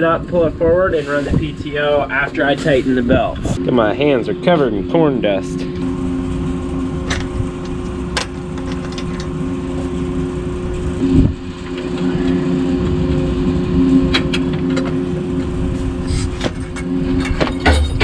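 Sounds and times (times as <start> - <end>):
tractor engine running: 4.0 - 12.0.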